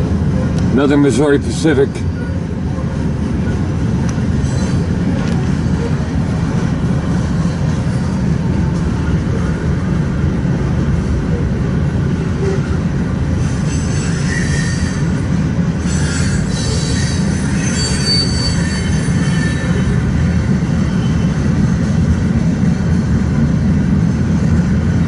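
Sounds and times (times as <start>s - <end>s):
train wheels rumbling on rail: 0.0s - 25.0s
high-pitched wheel squeals: 4.4s - 5.1s, 13.4s - 20.1s.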